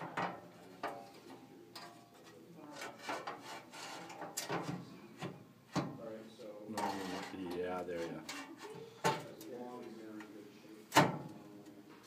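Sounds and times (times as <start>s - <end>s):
panel scraping: 2.7s - 4.8s, 6.7s - 9.2s.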